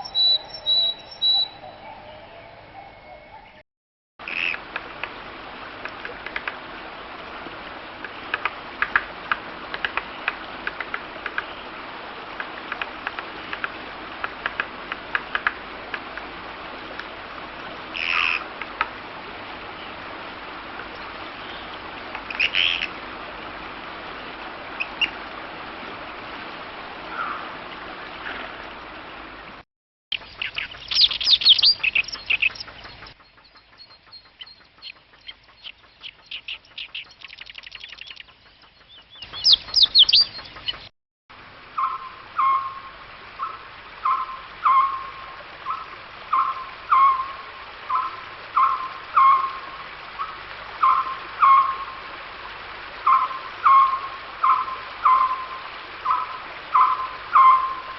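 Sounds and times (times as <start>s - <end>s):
birds chirping: 0.0s - 3.6s, 30.1s - 40.9s, 41.7s - 52.0s, 53.0s - 57.9s
background hiss: 30.1s - 57.9s.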